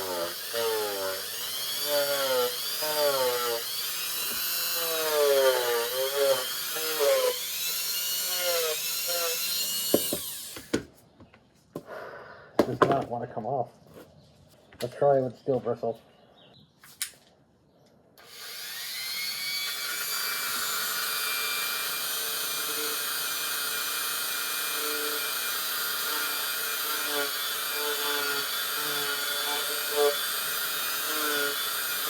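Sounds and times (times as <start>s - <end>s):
rotary tool wire brush whine: 0.0s - 10.8s, 18.2s - 32.0s.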